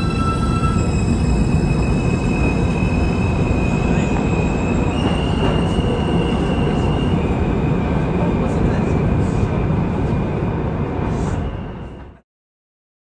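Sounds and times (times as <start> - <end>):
high-pitched wheel squeal: 0.0 - 7.3
train wheels rumbling on track: 0.0 - 12.2.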